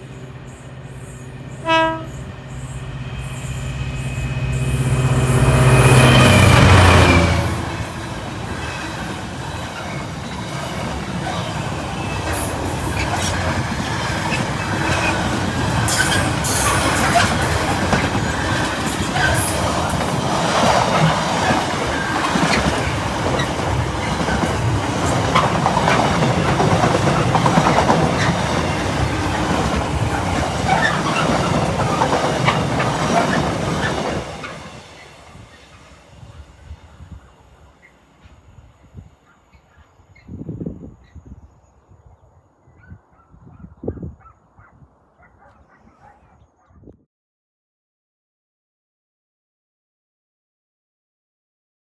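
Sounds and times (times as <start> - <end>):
locomotive engine: 0.0 - 35.4
wagons clattering over rail joints: 7.9 - 34.6
wheel squeal: 8.6 - 19.8.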